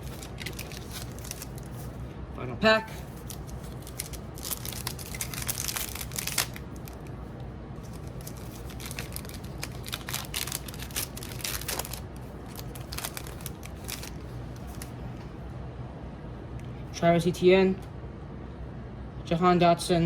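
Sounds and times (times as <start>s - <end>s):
wrapper tearing and crinkling: 0.0s - 1.9s, 3.2s - 7.1s, 7.8s - 14.9s
cards being handled: 0.0s - 2.0s, 3.0s - 7.2s, 7.8s - 15.0s.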